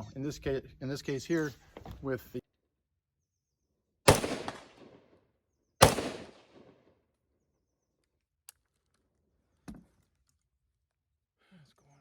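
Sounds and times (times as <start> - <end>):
rifle shot echoing: 4.1 - 5.1, 5.8 - 6.9.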